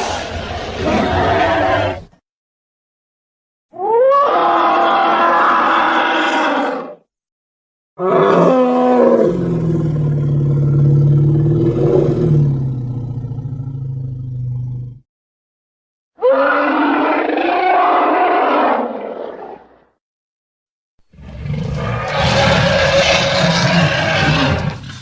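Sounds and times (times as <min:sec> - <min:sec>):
dinosaur roar: 0:03.8 - 0:07.0, 0:08.0 - 0:15.0, 0:16.2 - 0:19.8, 0:21.2 - 0:25.0
deep steady rumble: 0:10.5 - 0:15.0.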